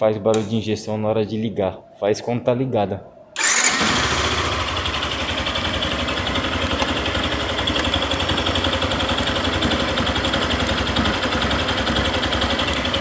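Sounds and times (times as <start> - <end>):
motorcycle engine idling: 3.4 - 13.0.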